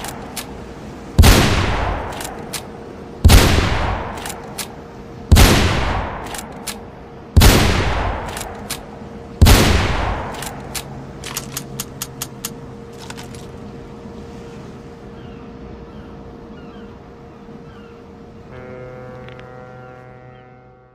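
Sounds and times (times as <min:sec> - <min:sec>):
rifle bolt metallic clicks: 0:02.0 - 0:02.7, 0:04.0 - 0:04.8, 0:06.2 - 0:06.9, 0:08.2 - 0:08.9, 0:10.2 - 0:13.5
rifle shots echoing: 0:03.2 - 0:04.4, 0:05.3 - 0:06.5, 0:07.4 - 0:08.6, 0:09.4 - 0:10.5.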